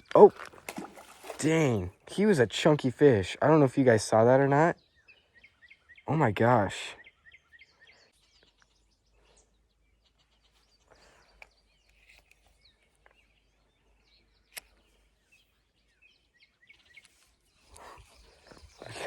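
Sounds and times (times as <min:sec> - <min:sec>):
faint bird chirps: 0:04.6 - 0:19.0.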